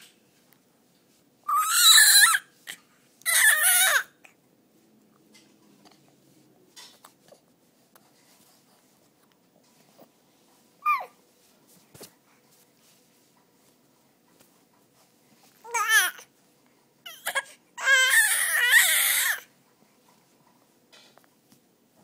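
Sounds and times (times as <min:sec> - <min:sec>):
baby squealing: 0:01.5 - 0:02.4, 0:03.3 - 0:04.1.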